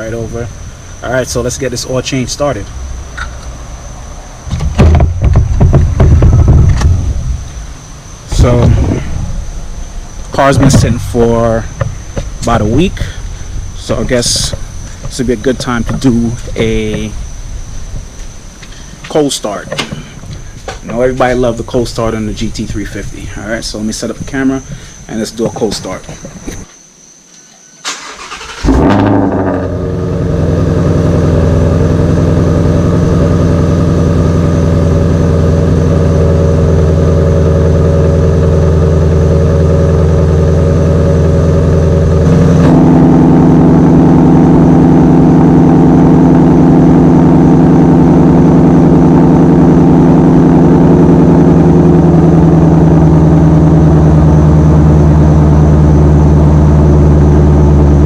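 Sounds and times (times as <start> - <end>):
car engine cranking and idling: 0.0 - 26.7, 27.8 - 58.0.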